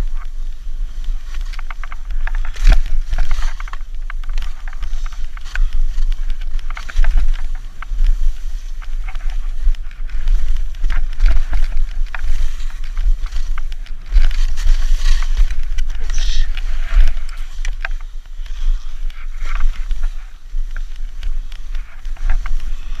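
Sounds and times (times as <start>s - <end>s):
skis scraping through snow: 0.0s - 23.0s
wind buffeting microphone: 0.0s - 23.0s.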